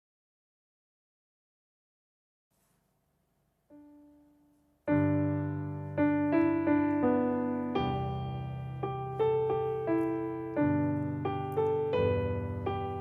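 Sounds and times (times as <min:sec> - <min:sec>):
piano music: 0:03.7 - 0:13.0.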